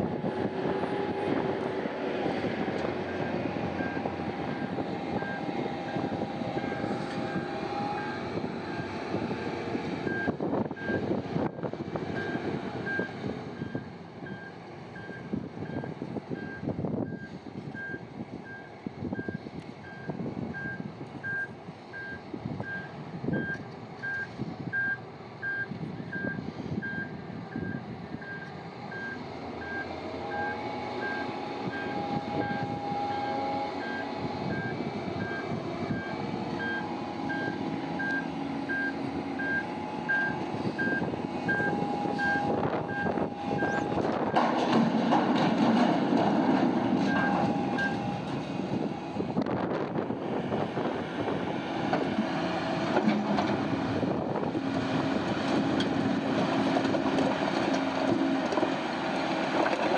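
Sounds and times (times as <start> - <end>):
diesel engine running: 0.0 - 59.9
reversing alarm beeping: 12.2 - 44.4, 47.1 - 48.1
machinery whine: 27.1 - 59.9.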